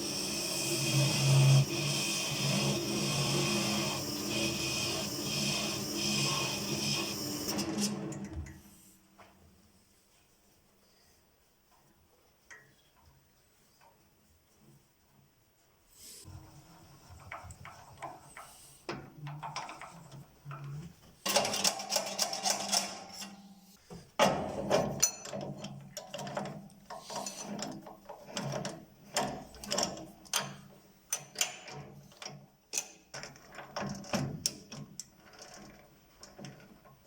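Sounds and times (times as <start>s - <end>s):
tools and wood clicking and knocking: 17.2s - 23.5s, 24.1s - 37.0s.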